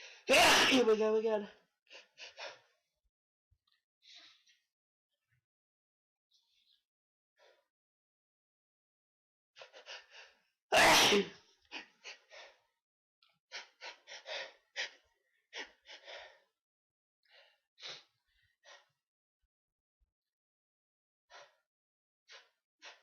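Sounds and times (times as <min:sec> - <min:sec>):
person sneezing: 0:00.3 - 0:00.9, 0:10.8 - 0:11.3.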